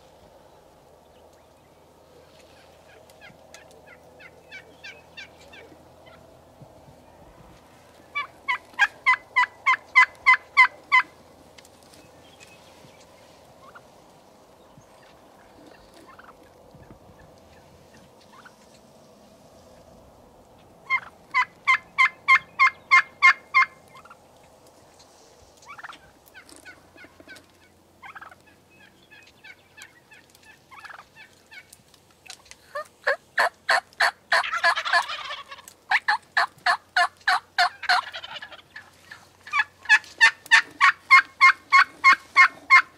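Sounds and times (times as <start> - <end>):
turkey clucks: 1.3 - 6.6, 7.9 - 18.8, 20.5 - 42.9
turkey yelping: 2.8 - 6.2, 8.1 - 11.2, 20.8 - 24.2, 25.6 - 31.7, 32.7 - 42.9
rough turkey call: 8.0 - 11.2, 20.8 - 24.2, 25.0 - 31.7, 32.3 - 42.9.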